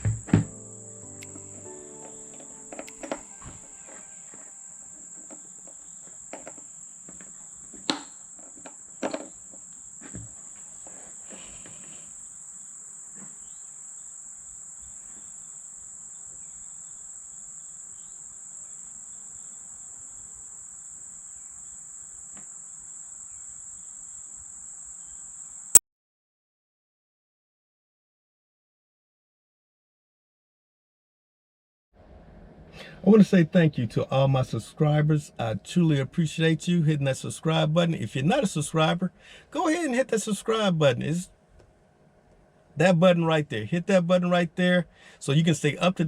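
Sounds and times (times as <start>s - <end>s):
crickets trilling: 0.0s - 25.8s.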